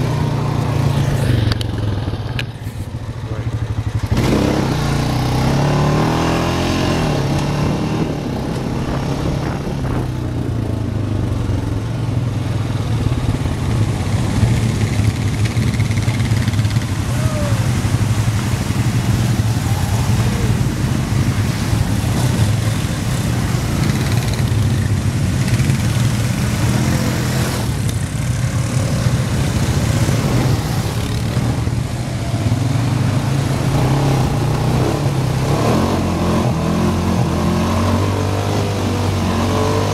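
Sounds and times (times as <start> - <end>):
atv engine running: 0.0 - 39.9
rough riding rumble: 7.2 - 36.3.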